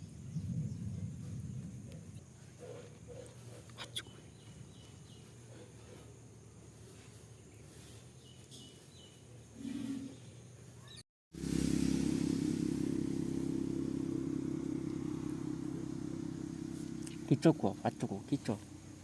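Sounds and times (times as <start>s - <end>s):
engine running steadily: 11.4s - 19.0s.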